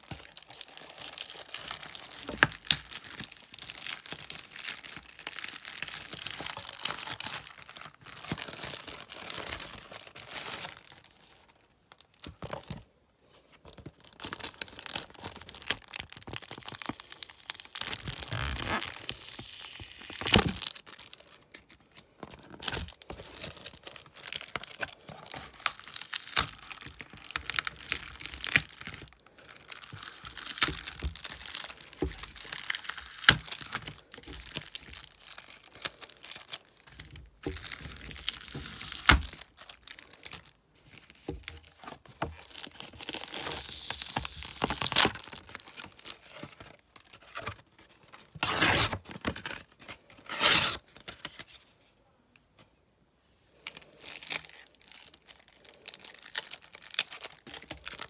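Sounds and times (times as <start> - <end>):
card packets tearing and wrappers crinkling: 0.0 - 12.8, 13.7 - 40.5, 41.5 - 51.6, 53.6 - 58.0.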